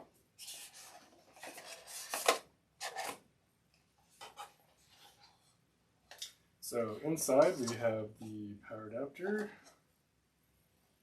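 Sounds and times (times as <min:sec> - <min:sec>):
packaging rubbing and sliding: 0:00.4 - 0:03.2.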